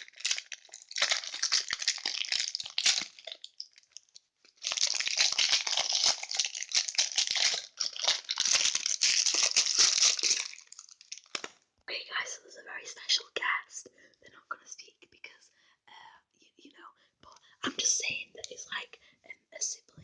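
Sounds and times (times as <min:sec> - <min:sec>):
crinkly packet crinkling and tearing: 0:00.0 - 0:11.6.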